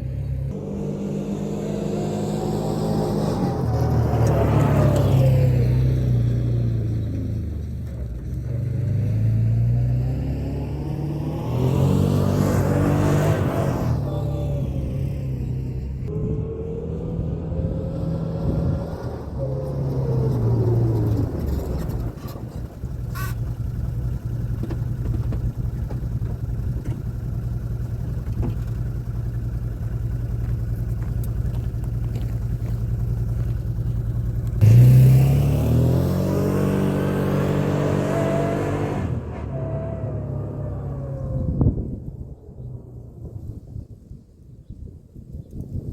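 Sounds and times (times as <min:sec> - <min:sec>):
engine revving: 0:00.0 - 0:27.0, 0:27.7 - 0:42.0.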